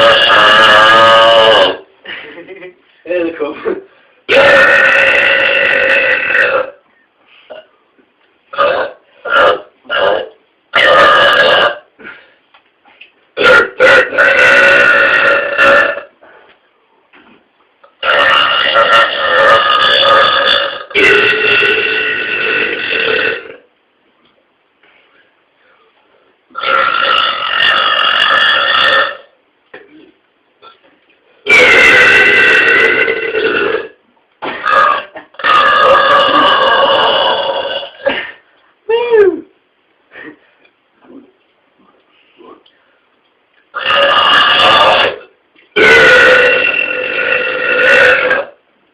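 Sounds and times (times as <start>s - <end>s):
man belching loudly: 0.0s - 1.8s, 4.3s - 6.8s, 8.5s - 11.9s, 13.4s - 16.2s, 18.0s - 23.6s, 26.5s - 29.3s, 31.5s - 38.4s, 43.7s - 48.6s.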